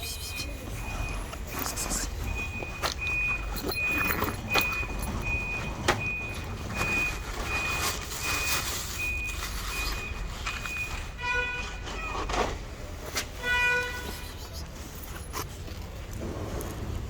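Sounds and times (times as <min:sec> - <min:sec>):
reversing alarm beeping: 0:00.0 - 0:12.3.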